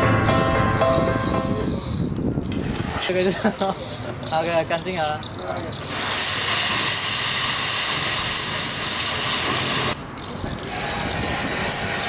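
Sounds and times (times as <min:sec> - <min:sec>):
high-pressure water spray hissing: 0:02.5 - 0:04.0, 0:05.8 - 0:10.0, 0:10.7 - 0:12.0.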